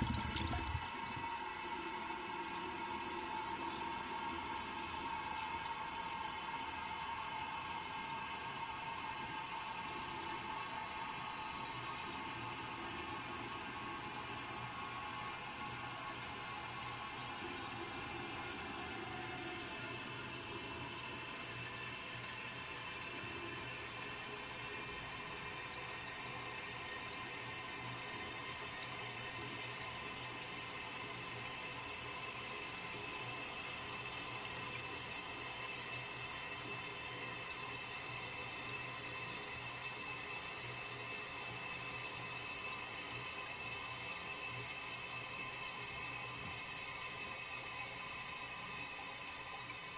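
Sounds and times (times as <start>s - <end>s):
water rushing into toilet cistern: 0.0s - 1.3s.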